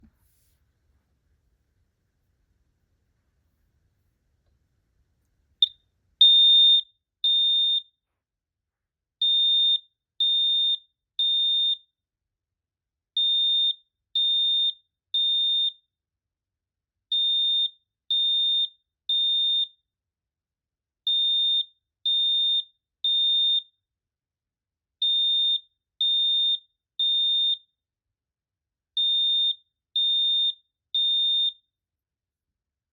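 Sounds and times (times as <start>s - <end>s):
fire alarm horn beeping: 29.0s - 31.6s.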